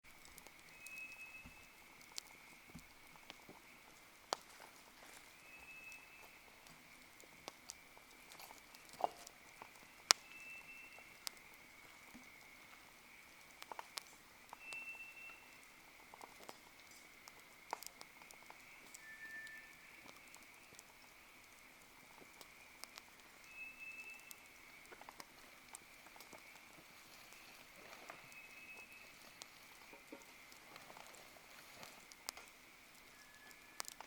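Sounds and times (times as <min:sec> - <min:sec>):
wood fire crackling: 0:00.0 - 0:34.0
faint high-pitched drone: 0:00.6 - 0:02.8, 0:05.0 - 0:13.4, 0:14.5 - 0:15.9, 0:18.6 - 0:21.5, 0:22.2 - 0:25.1, 0:25.8 - 0:30.8.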